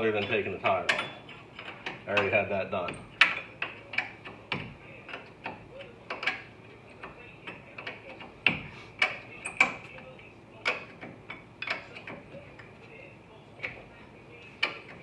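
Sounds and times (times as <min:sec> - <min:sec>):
hand tools clinking on metal: 0:00.0 - 0:08.0.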